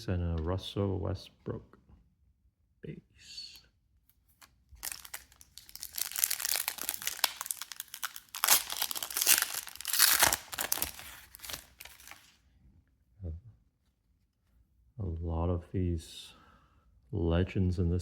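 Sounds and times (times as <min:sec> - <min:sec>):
foil wrapper tearing and crinkling: 0:04.4 - 0:12.4.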